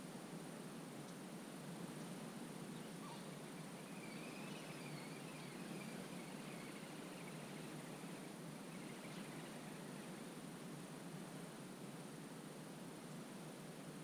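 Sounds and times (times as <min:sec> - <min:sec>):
outdoor background hiss: 0:00.0 - 0:14.0
wavering high-pitched call: 0:02.8 - 0:10.2.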